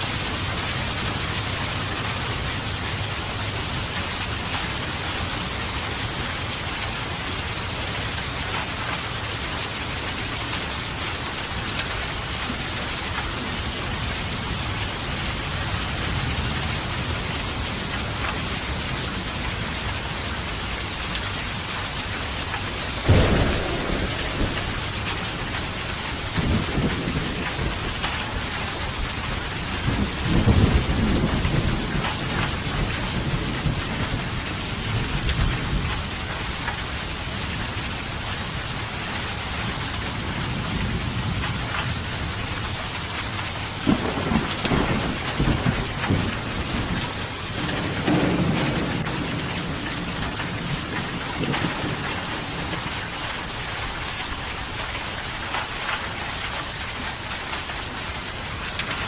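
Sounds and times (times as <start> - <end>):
heavy rain falling: 0.0 - 59.0
rolling thunder rumbles: 22.4 - 59.0
thunder crack: 23.0 - 28.2, 43.8 - 52.9.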